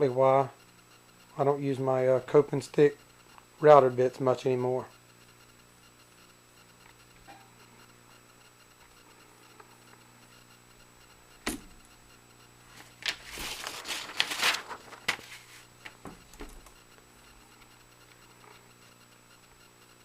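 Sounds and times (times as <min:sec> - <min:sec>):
rustling and scraping: 0:12.7 - 0:16.8.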